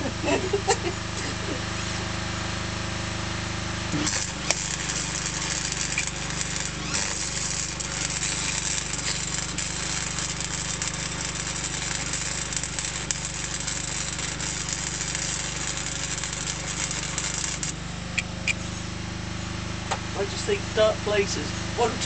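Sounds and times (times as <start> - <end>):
electric arc welding crackle: 3.8 - 18.6.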